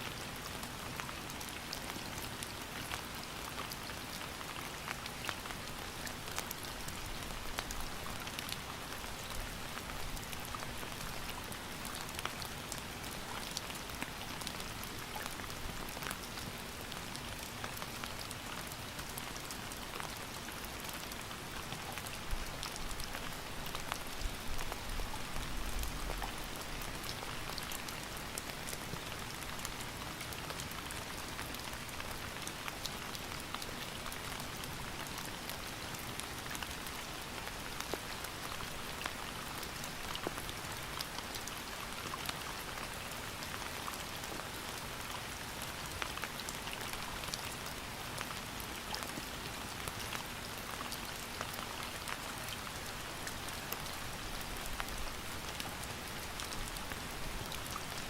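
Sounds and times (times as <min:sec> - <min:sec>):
rain falling: 0:00.0 - 0:58.0
raindrops ticking on surface: 0:00.0 - 0:58.0.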